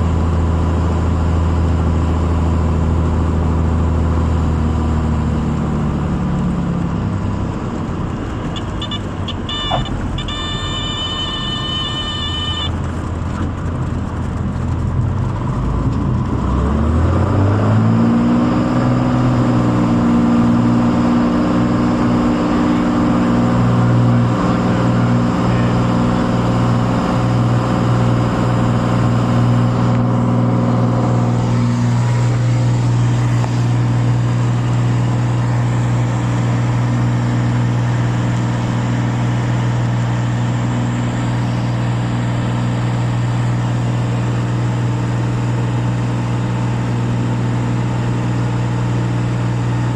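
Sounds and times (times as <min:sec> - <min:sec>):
propeller plane engine drone: 0:00.0 - 0:49.9
brief high steady tone: 0:08.8 - 0:12.7.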